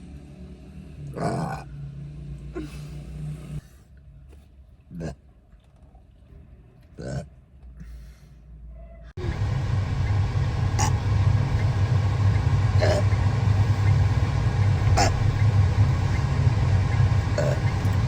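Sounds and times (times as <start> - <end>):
car cabin low rumble: 9.2 - 18.0.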